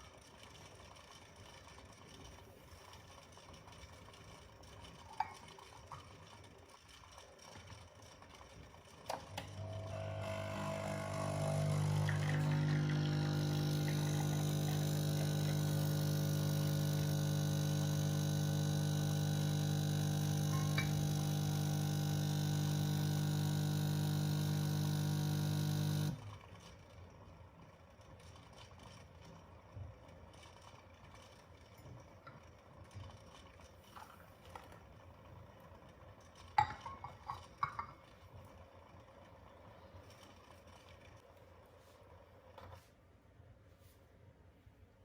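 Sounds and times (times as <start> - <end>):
coffee machine pump buzzing: 9.1 - 26.6.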